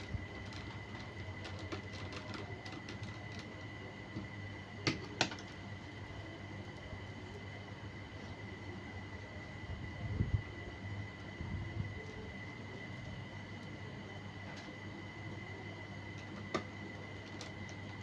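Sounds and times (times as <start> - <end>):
steady low hum: 0.0 - 18.0
clicks and taps on a laptop: 4.2 - 5.5.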